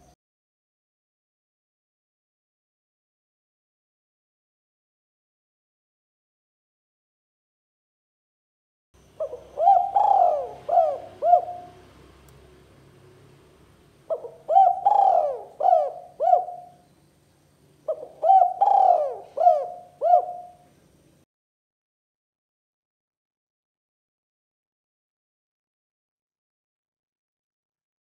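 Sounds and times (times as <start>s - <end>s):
dove cooing: 9.2s - 12.0s, 14.1s - 16.8s, 17.8s - 20.7s.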